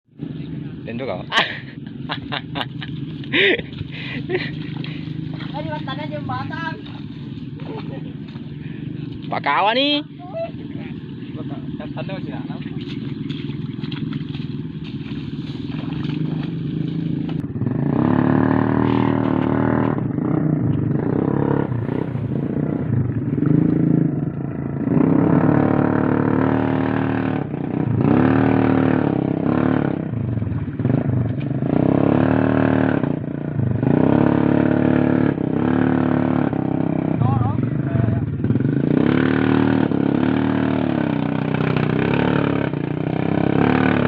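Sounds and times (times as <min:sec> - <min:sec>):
motorcycle engine revving: 0:00.1 - 0:44.0
engine clatter: 0:00.2 - 0:10.0, 0:10.7 - 0:29.0.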